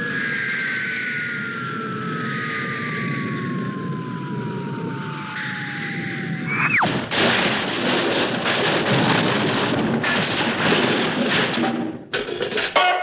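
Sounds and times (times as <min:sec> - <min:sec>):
whistling tone swooping down: 0:04.4 - 0:06.9
scrap metal crashing and clattering: 0:06.9 - 0:13.0.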